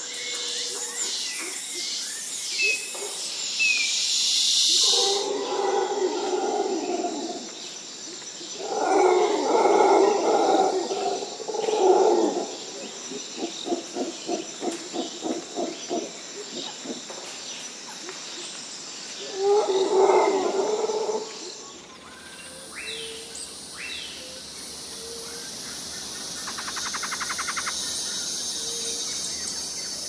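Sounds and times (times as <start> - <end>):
steady high hiss: 17.3 - 30.0.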